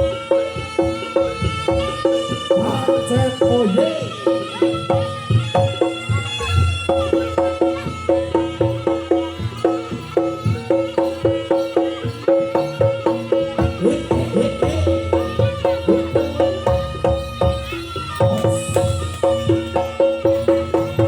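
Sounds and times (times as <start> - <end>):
low drum beats: 0.0 - 21.0
metal gong-chimes: 8.7 - 21.0.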